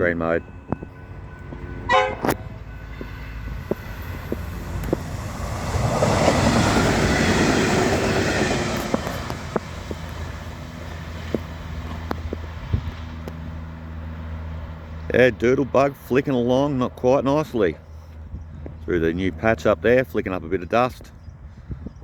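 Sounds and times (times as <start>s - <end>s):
passenger train passing: 0.0s - 21.1s
wheels clicking over rail joints: 0.7s - 12.5s.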